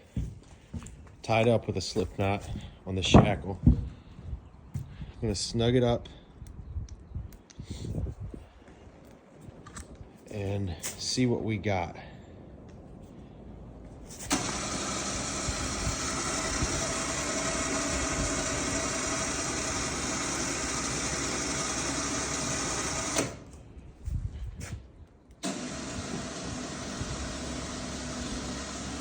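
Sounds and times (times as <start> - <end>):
electric winch running: 14.1 - 23.6, 25.4 - 29.0.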